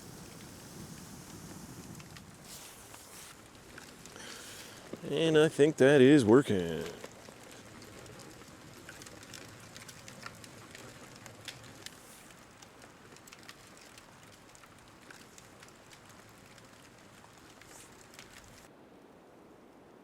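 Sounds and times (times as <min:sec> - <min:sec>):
steady hiss: 0:00.0 - 0:08.8, 0:09.6 - 0:18.7
fire snaps and pops: 0:00.0 - 0:18.7
campfire crackling: 0:00.0 - 0:19.4.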